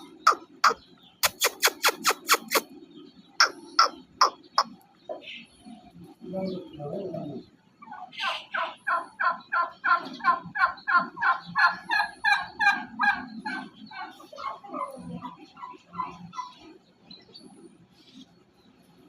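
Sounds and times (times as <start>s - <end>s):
turkey calling: 0.0s - 5.8s, 7.8s - 16.8s.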